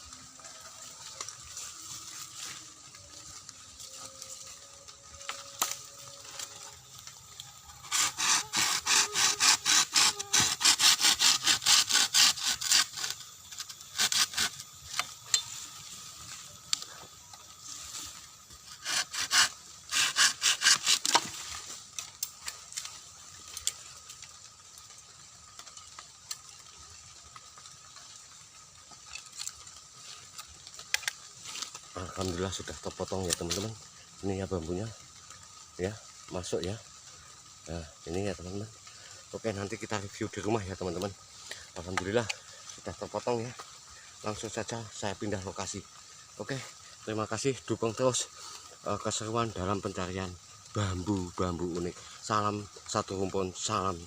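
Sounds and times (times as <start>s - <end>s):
hand saw cutting bamboo: 7.7s - 15.1s, 18.6s - 21.5s.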